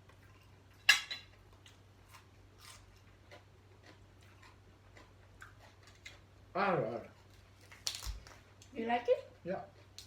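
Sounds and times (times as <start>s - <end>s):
chewing: 0.0s - 6.3s
low steady hum: 0.0s - 10.0s.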